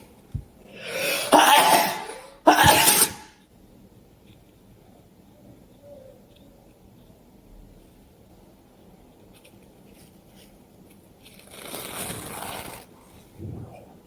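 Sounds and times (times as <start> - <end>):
person sneezing: 0.8 - 3.3.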